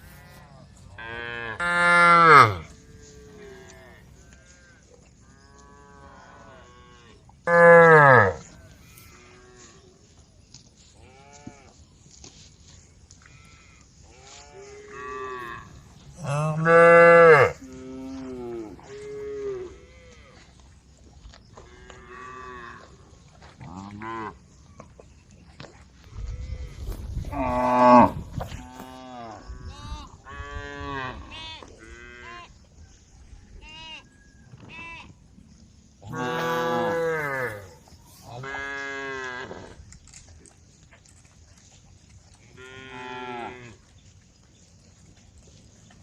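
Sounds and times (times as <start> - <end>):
cattle mooing: 1.0 - 4.0, 14.9 - 20.1, 36.1 - 37.7.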